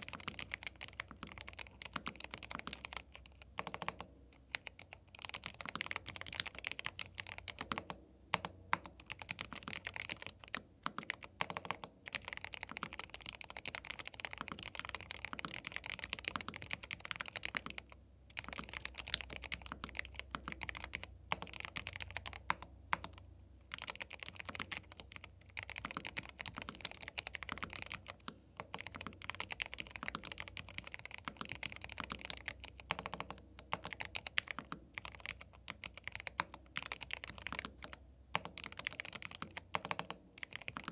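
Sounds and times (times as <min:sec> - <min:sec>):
fast typing on mechanical keyboard: 0:00.0 - 0:40.9.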